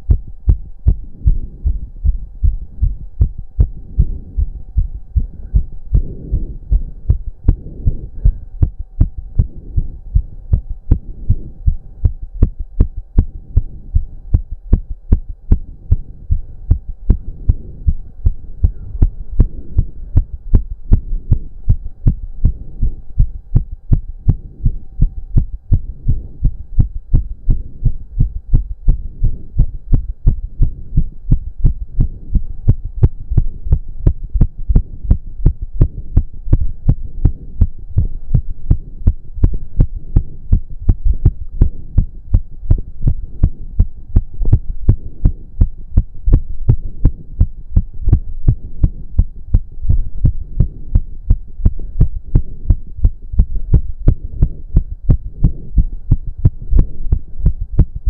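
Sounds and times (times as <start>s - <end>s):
faint steady hum: 0.0s - 58.0s
heart pounding fast: 0.0s - 58.0s.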